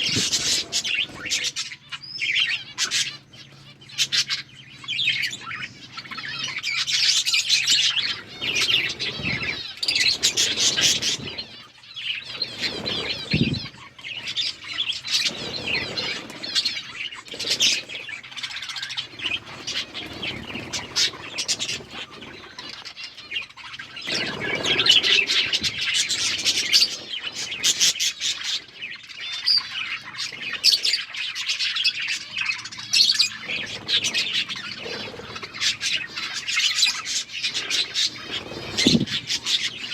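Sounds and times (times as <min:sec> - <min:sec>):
budgerigars chattering: 0:00.0 - 0:39.9.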